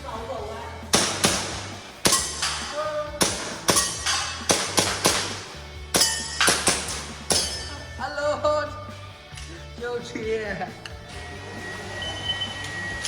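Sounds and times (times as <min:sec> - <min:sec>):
airsoft pistol shots: 0:00.9 - 0:07.7
metallic ring from steel targets: 0:01.1 - 0:08.0.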